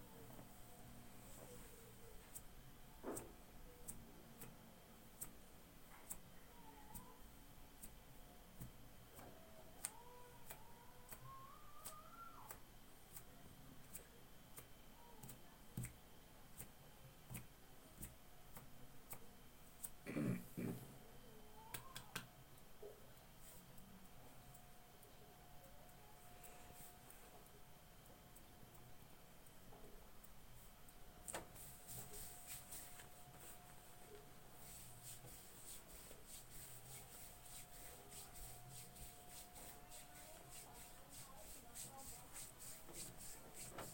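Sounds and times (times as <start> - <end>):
thin steady hum: 0.0 - 43.9
hands rubbing skin: 31.3 - 43.9.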